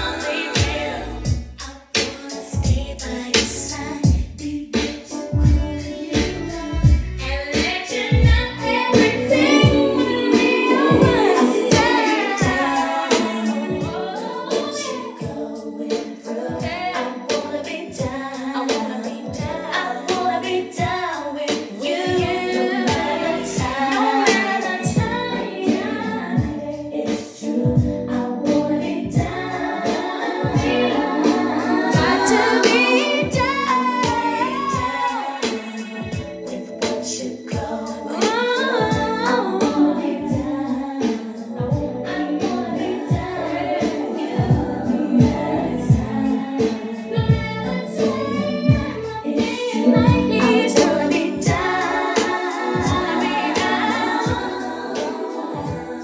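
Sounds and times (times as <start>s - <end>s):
kick drum beat: 0.0s - 1.5s, 2.6s - 3.0s, 4.0s - 4.4s, 5.4s - 5.8s, 6.8s - 7.2s, 8.1s - 8.6s, 9.6s - 9.9s, 10.9s - 12.7s, 23.6s - 23.8s, 27.6s - 28.0s, 29.2s - 29.4s, 30.4s - 30.8s, 32.0s - 32.3s, 38.8s - 39.1s, 41.6s - 42.0s, 43.1s - 43.3s, 44.4s - 46.2s, 47.2s - 47.5s, 48.7s - 48.9s, 50.0s - 50.3s, 51.5s - 51.8s, 52.8s - 53.1s, 54.3s - 54.5s, 55.6s - 55.9s
steady drum beat: 0.0s - 15.6s, 20.8s - 36.5s, 37.5s - 56.0s
female vocals: 0.0s - 56.0s
woman singing: 0.0s - 56.0s.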